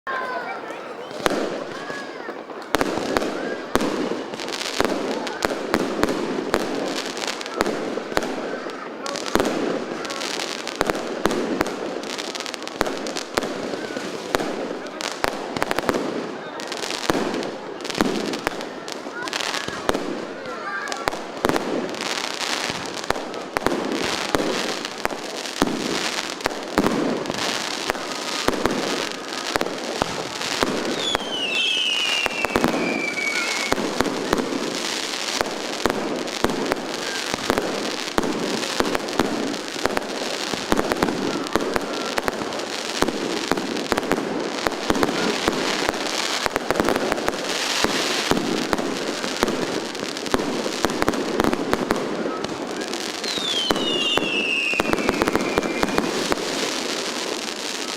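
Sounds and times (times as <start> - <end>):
fireworks bangs and crackles: 0.1 - 57.9
falling firework whistle: 27.3 - 34.8, 52.4 - 56.4.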